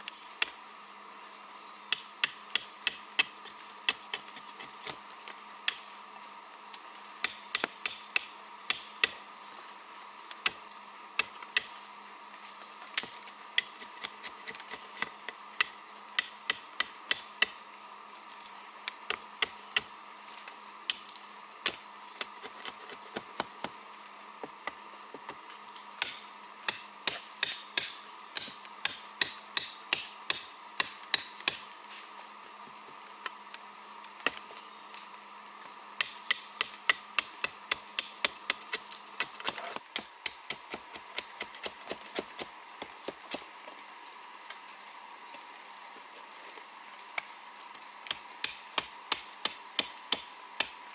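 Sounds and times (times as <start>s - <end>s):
jungle insects droning: 0.0s - 50.9s
hand tool chopping: 26.0s - 31.6s, 36.0s - 43.4s.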